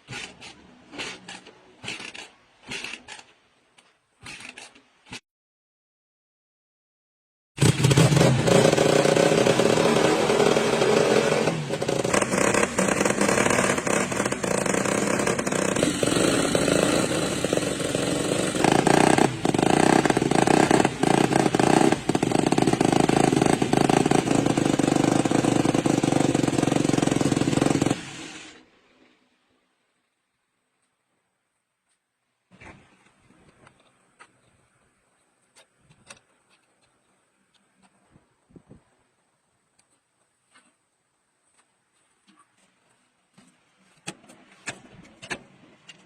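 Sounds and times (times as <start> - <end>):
small engine running loudly: 7.6 - 28.6.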